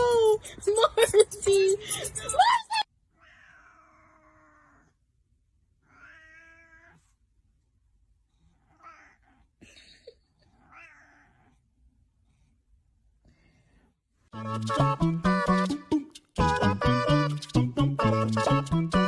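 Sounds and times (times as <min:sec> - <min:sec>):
cat meowing faintly: 0:03.2 - 0:05.0, 0:05.8 - 0:07.2.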